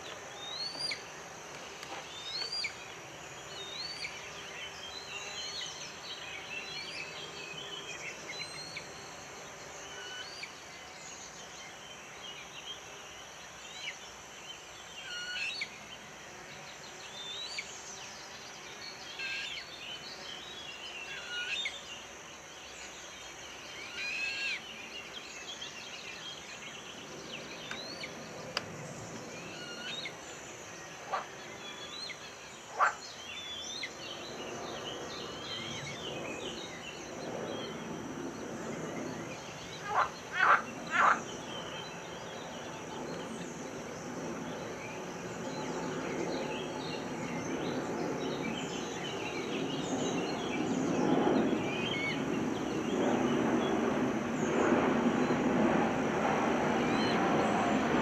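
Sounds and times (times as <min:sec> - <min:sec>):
small birds calling and singing: 0:00.0 - 0:55.5, 0:56.7 - 0:58.0
loud sharp bird calls: 0:31.0 - 0:34.2, 0:39.3 - 0:43.4.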